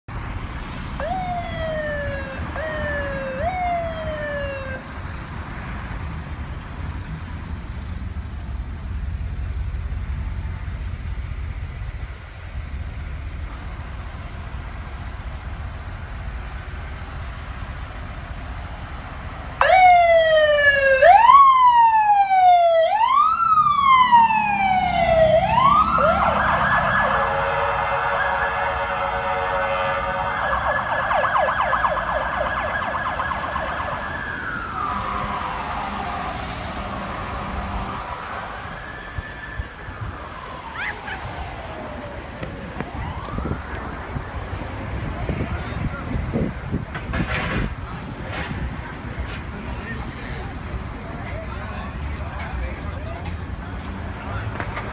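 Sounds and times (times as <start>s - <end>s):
engine and road rumble: 0.0s - 54.9s
electronic siren sweeps and warble: 1.0s - 4.9s, 19.6s - 28.7s.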